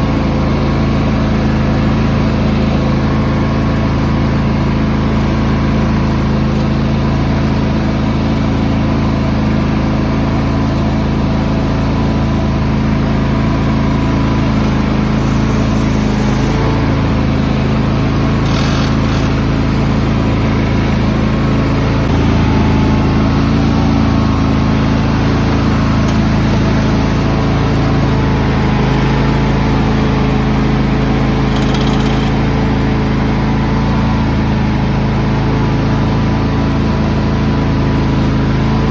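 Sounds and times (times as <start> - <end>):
lawn tractor engine running: 0.0 - 38.9
scrape or rattle: 18.4 - 19.4, 31.5 - 32.4.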